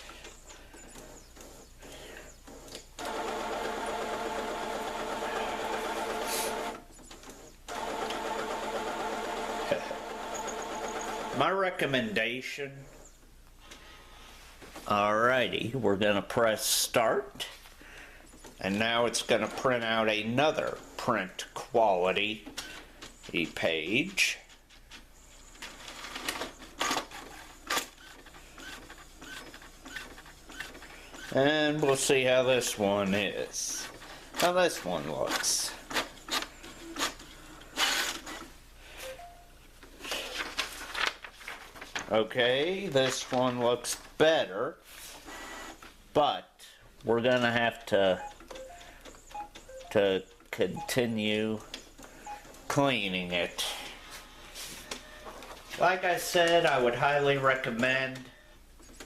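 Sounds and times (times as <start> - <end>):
printer whirring and clicking: 0.3 - 1.7, 2.4 - 11.4, 19.1 - 21.1, 25.6 - 32.2, 45.2 - 45.9
inkjet printer motor running: 2.5 - 6.8, 7.7 - 11.4.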